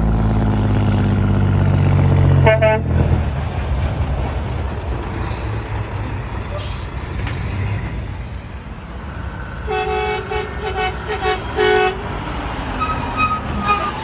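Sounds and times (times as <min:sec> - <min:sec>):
diesel truck engine passing: 0:00.0 - 0:14.0
tyre and road noise: 0:00.0 - 0:14.0
truck horn blast: 0:02.3 - 0:03.2, 0:09.6 - 0:14.0.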